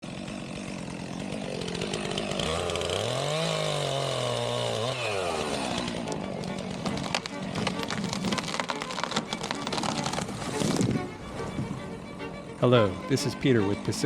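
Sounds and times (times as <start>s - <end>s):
chainsaw revving: 0.0s - 14.0s.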